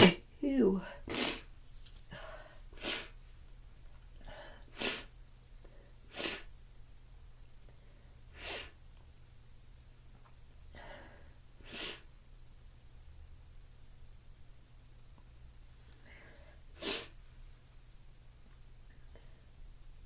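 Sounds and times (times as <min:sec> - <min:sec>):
person sneezing: 0:00.0 - 0:00.3, 0:01.1 - 0:01.5.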